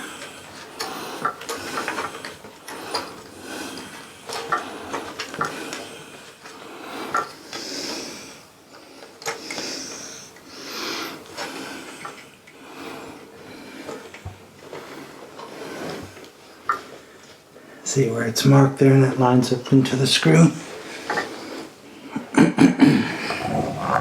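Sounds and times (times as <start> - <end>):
hands rubbing and sliding parts: 0.0 - 8.2, 23.1 - 24.0.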